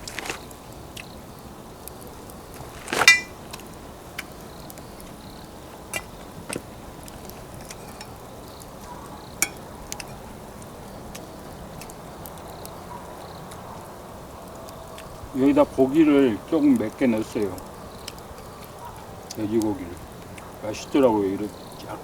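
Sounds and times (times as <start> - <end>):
low hiss: 0.0 - 18.4, 19.2 - 22.0
utensils clinking on cooking pot: 3.0 - 3.4, 9.4 - 10.2.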